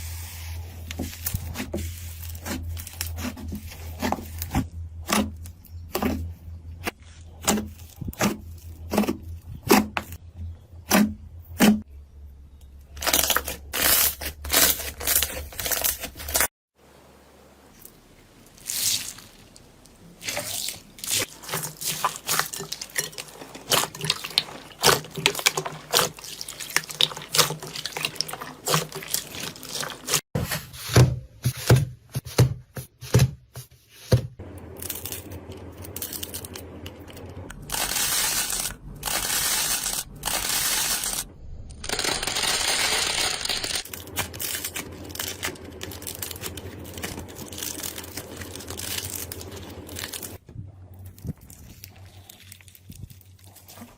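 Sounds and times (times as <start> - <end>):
slime popping and crackling: 20.2 - 30.2.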